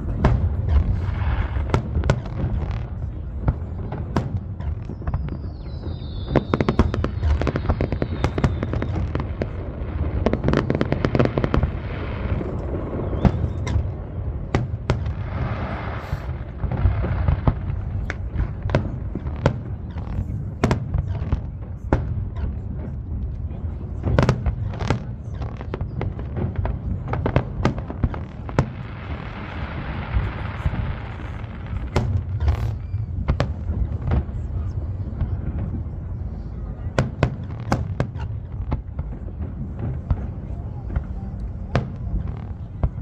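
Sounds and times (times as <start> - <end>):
fireworks booming: 0.0 - 43.0
fireworks crackling: 0.0 - 43.0
falling firework whistle: 4.6 - 9.6, 12.5 - 14.1, 32.3 - 33.5.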